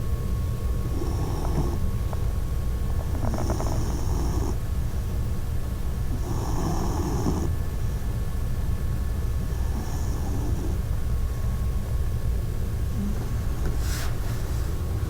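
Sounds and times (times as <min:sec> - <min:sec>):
puppy snoring: 0:00.7 - 0:05.2, 0:06.0 - 0:07.6, 0:09.2 - 0:11.2, 0:12.8 - 0:15.0.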